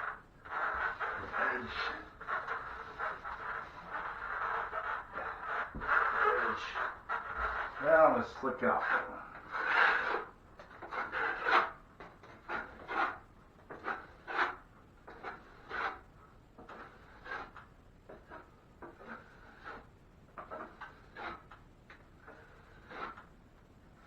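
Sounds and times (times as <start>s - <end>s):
drywall knife scraping compound: 0.0s - 21.6s, 22.2s - 23.3s.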